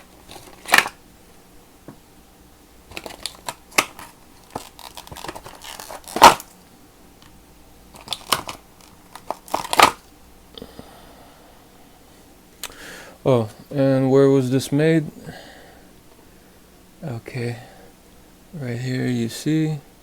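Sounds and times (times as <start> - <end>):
packaging crinkling and tearing: 0.0 - 1.0, 2.9 - 6.6, 7.9 - 10.1.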